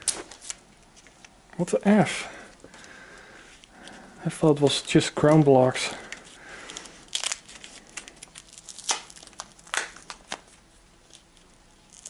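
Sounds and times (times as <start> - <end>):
plastic crinkling rustle: 6.0 - 12.0.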